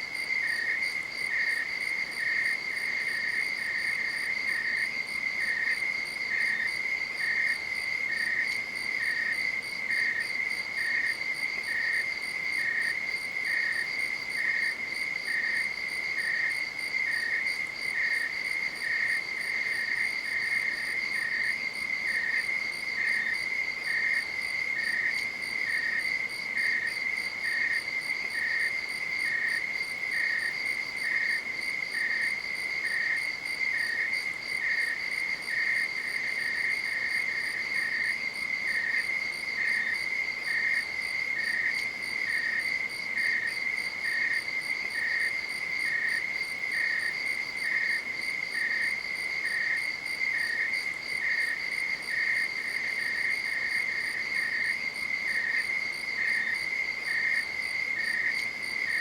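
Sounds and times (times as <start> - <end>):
lower insect chirp: 0.0 - 59.0.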